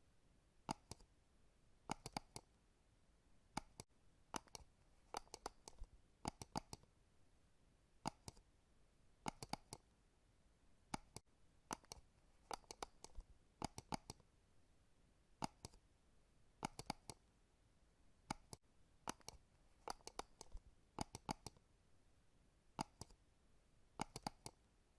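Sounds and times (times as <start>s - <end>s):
computer mouse button clicks: 1.9s - 2.5s, 8.1s - 8.4s, 16.6s - 17.2s, 22.8s - 23.2s, 24.0s - 24.6s.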